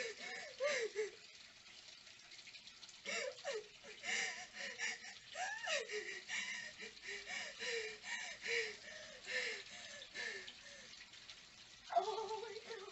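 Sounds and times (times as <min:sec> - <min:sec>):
woman sobbing breathlessly: 0:00.0 - 0:01.2, 0:03.0 - 0:10.5.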